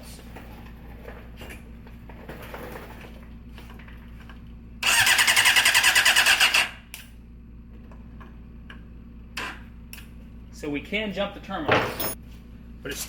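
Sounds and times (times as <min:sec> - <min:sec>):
engine cranking by starter motor: 0:04.8 - 0:07.0.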